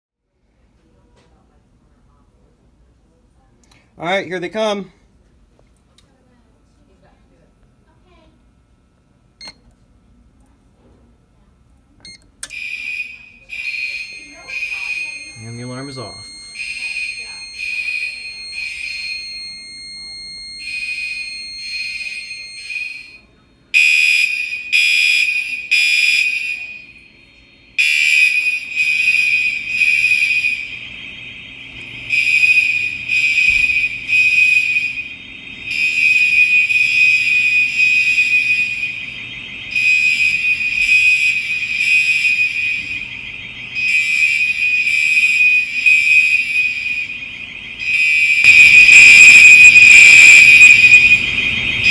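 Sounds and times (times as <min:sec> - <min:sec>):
door alarm pulsing tone: 0:12.4 - 0:51.9.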